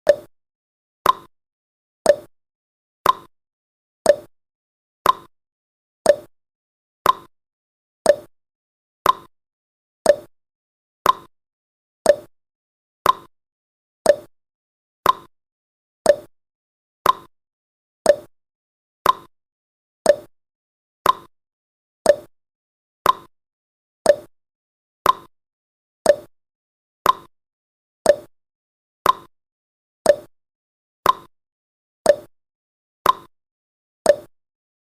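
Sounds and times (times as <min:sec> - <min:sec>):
timer ticking: 0:00.0 - 0:00.3, 0:01.0 - 0:01.3, 0:02.1 - 0:02.3, 0:03.0 - 0:03.3, 0:04.1 - 0:04.3, 0:05.0 - 0:05.3, 0:06.1 - 0:06.3, 0:07.0 - 0:07.3, 0:08.1 - 0:08.3, 0:09.0 - 0:09.3, 0:10.0 - 0:10.3, 0:11.0 - 0:11.3, 0:12.0 - 0:12.3, 0:13.0 - 0:13.3, 0:14.0 - 0:14.3, 0:15.0 - 0:15.3, 0:16.1 - 0:16.3, 0:17.0 - 0:17.3, 0:18.1 - 0:18.3, 0:19.0 - 0:19.3, 0:20.1 - 0:20.3, 0:21.0 - 0:21.3, 0:22.1 - 0:22.3, 0:23.0 - 0:23.3, 0:24.1 - 0:24.3, 0:25.0 - 0:25.3, 0:26.0 - 0:26.3, 0:27.0 - 0:27.3, 0:28.1 - 0:28.3, 0:29.0 - 0:29.3, 0:30.1 - 0:30.3, 0:31.0 - 0:31.3, 0:32.1 - 0:32.3, 0:33.0 - 0:33.3, 0:34.1 - 0:34.3.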